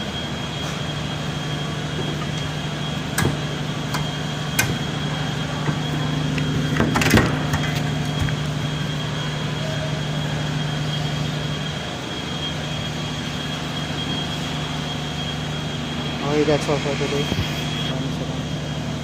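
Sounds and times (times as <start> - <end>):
workshop machine hum: 0.0 - 19.0
sharp knocks and clanks: 1.9 - 5.0, 5.6 - 8.6.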